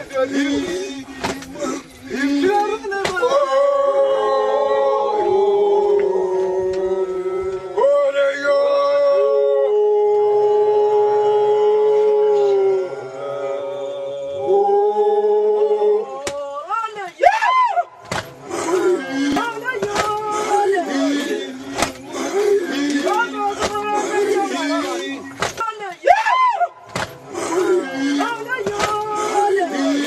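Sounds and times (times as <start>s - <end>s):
voices howling long notes: 0.0s - 16.6s.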